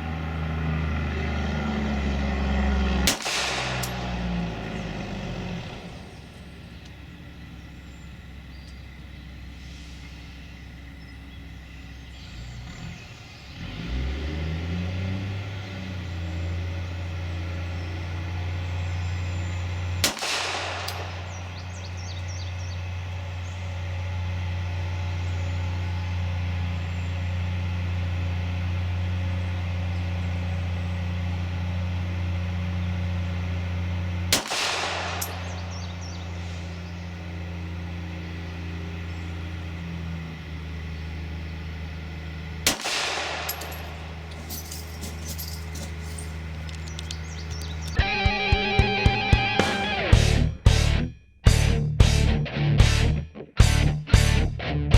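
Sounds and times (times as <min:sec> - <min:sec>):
low engine drone: 0:00.0 - 0:54.9
pistol shots: 0:03.0 - 0:04.5, 0:20.0 - 0:22.1, 0:34.3 - 0:36.3, 0:42.6 - 0:45.8.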